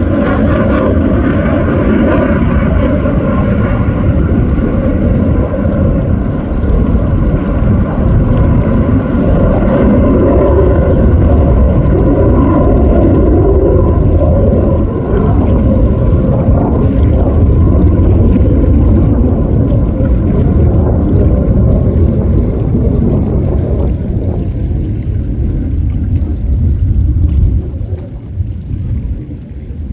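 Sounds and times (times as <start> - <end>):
jet engines roaring: 0.0 - 29.9.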